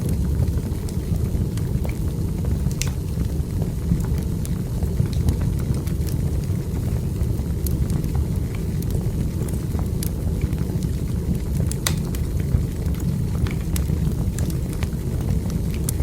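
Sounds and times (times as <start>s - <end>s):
burning logs crackling: 0.0s - 16.0s
low rumble of flames: 0.0s - 16.0s.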